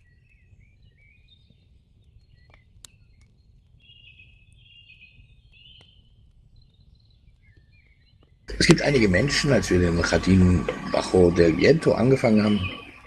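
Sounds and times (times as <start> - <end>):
birds chirping and warbling: 0.0 - 13.0
low background rumble: 8.5 - 13.0.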